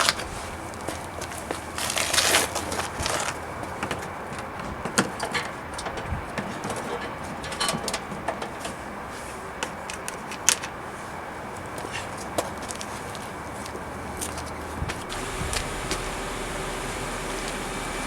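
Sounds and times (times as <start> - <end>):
steady hiss: 15.1 - 18.0.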